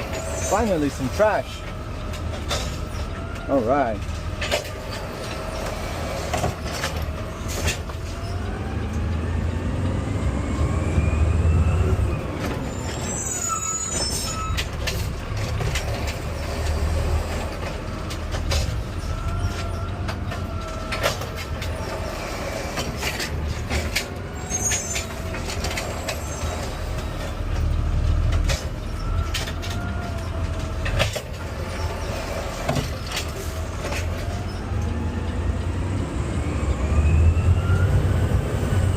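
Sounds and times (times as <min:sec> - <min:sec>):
knocks and clatter: 0:00.0 - 0:09.0, 0:14.0 - 0:35.0.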